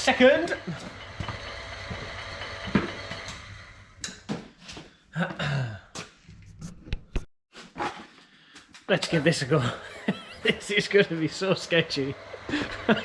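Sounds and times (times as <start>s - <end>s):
machine hum: 0.0s - 4.0s
knocks and clatter: 0.4s - 4.5s.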